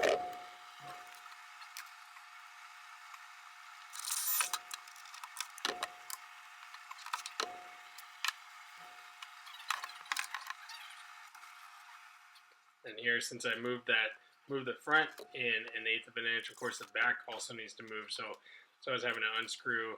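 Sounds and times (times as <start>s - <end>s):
hardware and tools clattering: 0.0s - 1.0s.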